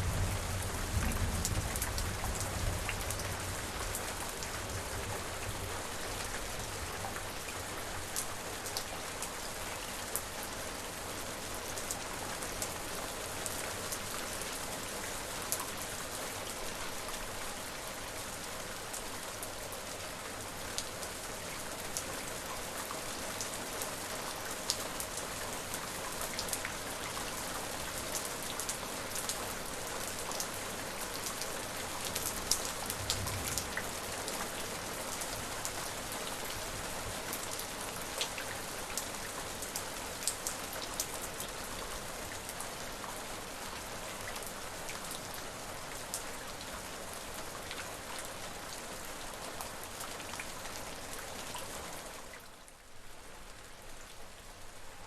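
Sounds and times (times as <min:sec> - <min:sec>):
steady rain hissing: 0:00.0 - 0:55.0.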